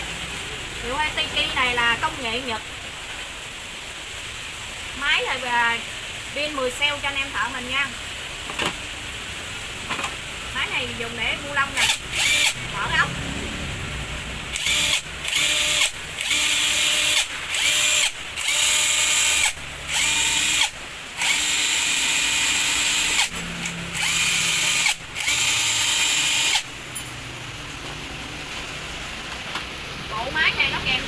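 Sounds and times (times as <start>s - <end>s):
impact wrench whining: 11.8s - 12.7s, 14.5s - 26.8s.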